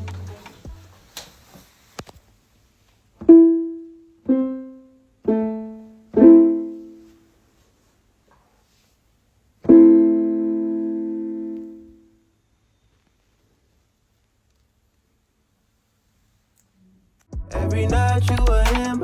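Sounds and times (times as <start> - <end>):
single piano notes: 3.2 - 7.0, 9.6 - 12.0
piano chord ringing: 3.3 - 7.0, 9.7 - 11.9.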